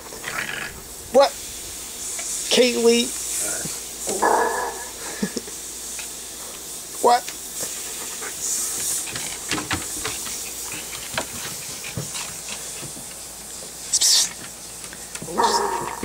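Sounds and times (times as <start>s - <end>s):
dog huffing and snuffling: 7.6s - 13.4s.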